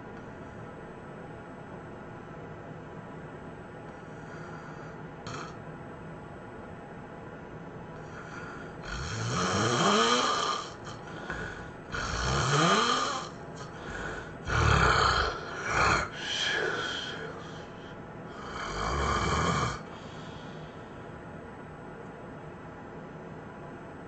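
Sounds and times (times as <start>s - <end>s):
person snoring loudly: 5.3s - 5.6s, 8.0s - 17.7s, 18.3s - 20.4s.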